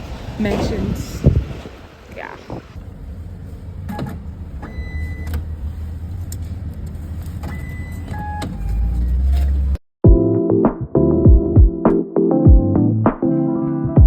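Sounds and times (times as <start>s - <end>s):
vehicle passing close: 0.0s - 4.6s
street traffic rumbling: 0.0s - 9.8s
electronic music with steady beat: 10.1s - 14.0s.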